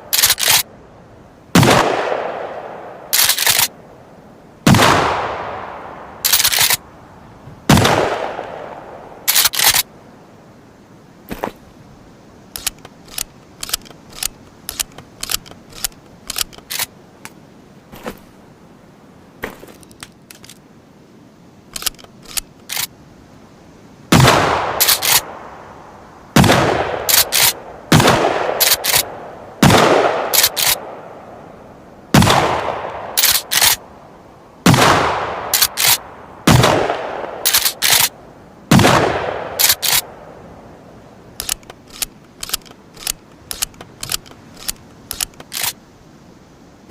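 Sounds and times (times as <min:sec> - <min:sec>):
gun action clicks and clacks: 0:00.1 - 0:00.7, 0:03.1 - 0:03.7, 0:06.2 - 0:06.8, 0:09.3 - 0:09.9, 0:12.6 - 0:16.9, 0:19.8 - 0:20.6, 0:21.7 - 0:22.9, 0:24.8 - 0:25.2, 0:27.1 - 0:27.6, 0:28.6 - 0:29.1, 0:30.3 - 0:30.8, 0:33.2 - 0:33.8, 0:35.5 - 0:36.0, 0:37.4 - 0:38.1, 0:39.6 - 0:40.1, 0:41.4 - 0:45.8
loud gunshots: 0:01.6 - 0:02.4, 0:04.7 - 0:05.4, 0:07.7 - 0:08.4, 0:26.4 - 0:27.3, 0:27.9 - 0:29.0, 0:29.6 - 0:30.6, 0:34.7 - 0:37.8, 0:38.7 - 0:39.9.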